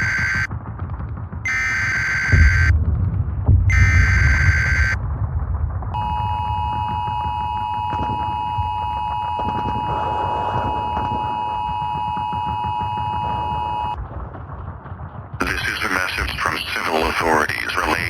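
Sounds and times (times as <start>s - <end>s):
low rumble: 0.0s - 18.0s
two-tone attention signal: 6.0s - 14.0s.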